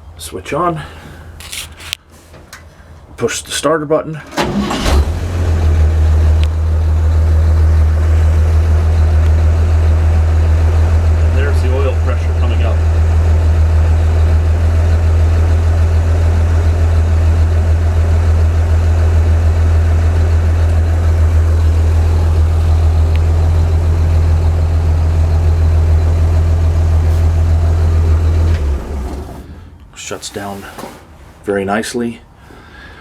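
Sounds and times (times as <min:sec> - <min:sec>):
truck engine idling: 0:04.3 - 0:29.9.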